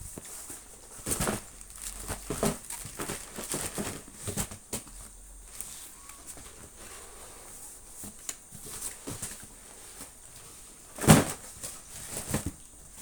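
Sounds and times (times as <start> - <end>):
packaging rustling: 0.2 - 4.6.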